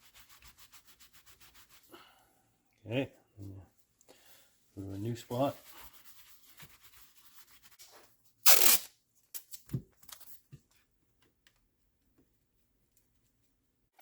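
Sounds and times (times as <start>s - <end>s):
short tearing rip: 8.4s - 8.9s.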